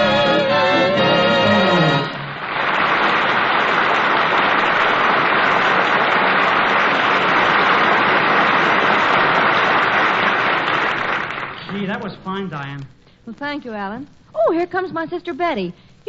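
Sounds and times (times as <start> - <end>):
orchestra chord: 0.0 - 2.3
audience applauding: 0.0 - 12.8.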